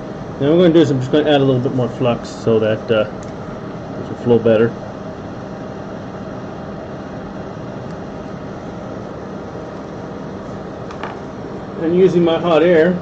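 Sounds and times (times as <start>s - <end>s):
hot air blower hissing: 0.0s - 13.0s.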